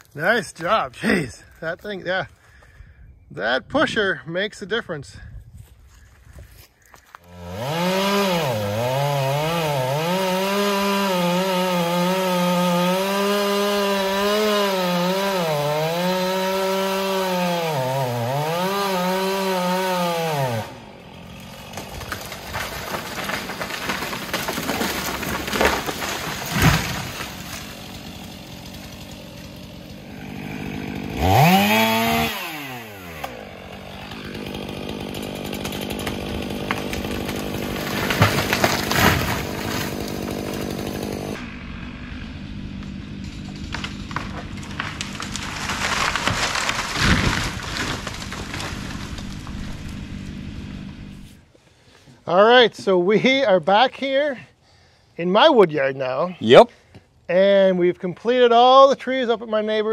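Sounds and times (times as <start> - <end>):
chainsaw revving: 7.2 - 51.3.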